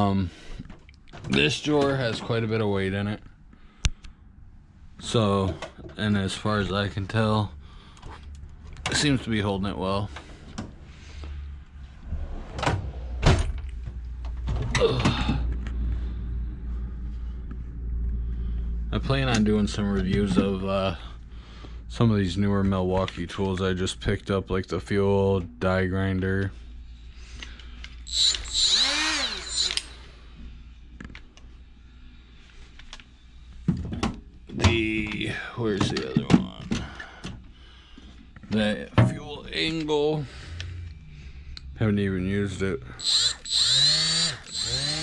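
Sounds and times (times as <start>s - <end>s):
die grinder motor whirring: 28.1s - 30.1s, 43.0s - 45.0s.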